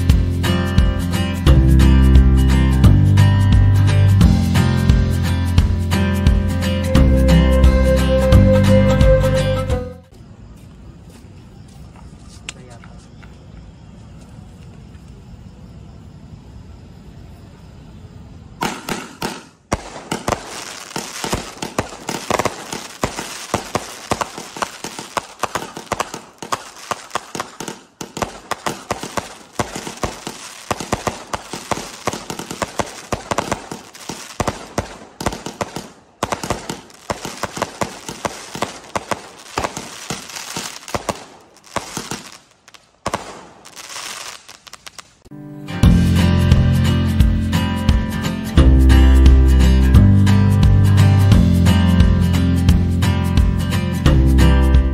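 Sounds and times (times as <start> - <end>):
fireworks cracking and bursting: 18.6 - 45.3.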